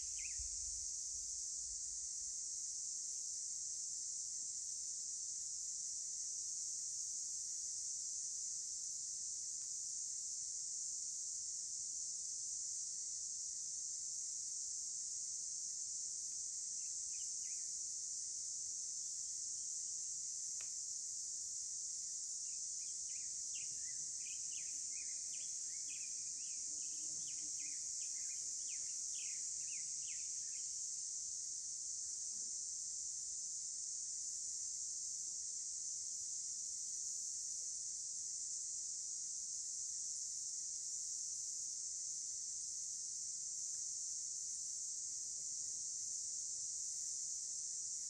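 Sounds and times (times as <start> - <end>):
high-pitched insect chorus: 0.0 - 48.0
click: 20.6 - 20.8.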